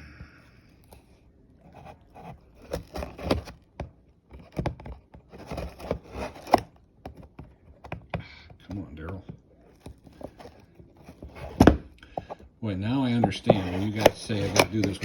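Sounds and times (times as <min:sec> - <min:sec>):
cardboard box being torn open: 0:02.2 - 0:03.6, 0:04.4 - 0:06.7, 0:13.4 - 0:15.0.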